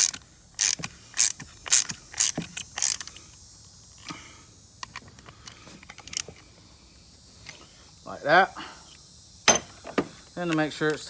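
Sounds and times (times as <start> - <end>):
hand ratchet clicking: 0.0 - 4.2.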